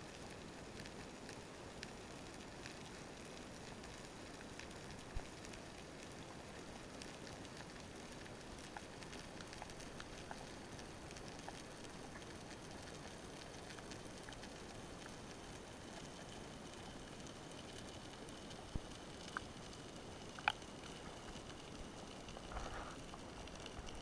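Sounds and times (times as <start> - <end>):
faint crackling clicks: 0.1 - 24.0.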